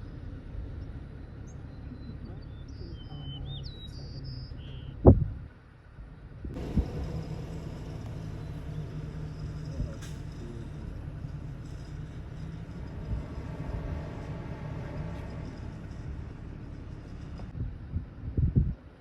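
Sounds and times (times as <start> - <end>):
vehicle engine and road hum: 6.2 - 18.8.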